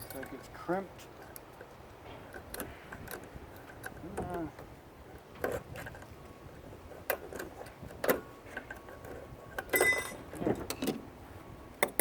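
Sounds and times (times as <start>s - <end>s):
hand tools clinking on metal: 0.0s - 0.7s, 7.2s - 11.0s.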